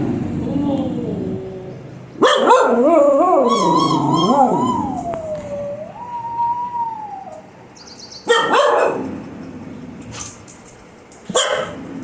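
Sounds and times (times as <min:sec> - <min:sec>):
dog howling whine: 0:00.0 - 0:07.7
dog barking: 0:02.2 - 0:05.0, 0:08.2 - 0:09.1, 0:11.3 - 0:11.9.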